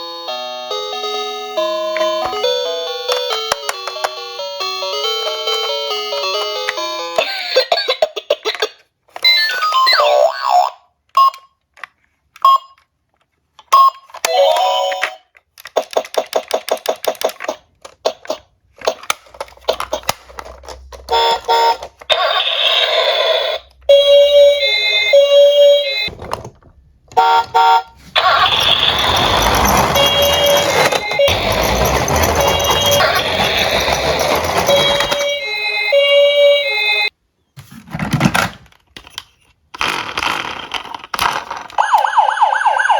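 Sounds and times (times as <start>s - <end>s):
music: 0.0s - 7.4s, 34.6s - 37.1s
toy siren tones and beeps: 9.2s - 11.5s, 21.1s - 26.1s, 27.2s - 37.1s, 41.8s - 42.9s.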